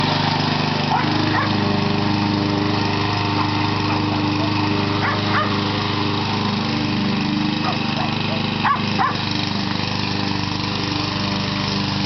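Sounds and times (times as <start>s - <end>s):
lawnmower engine running: 0.0s - 12.0s
dog barking: 0.9s - 1.6s, 3.9s - 5.5s, 7.6s - 9.2s.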